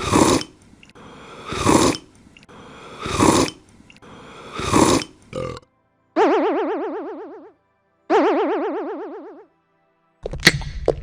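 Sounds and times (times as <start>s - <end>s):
loud burps: 4.6s - 5.7s
wobbling boing sound effect: 6.2s - 7.5s, 8.1s - 9.4s.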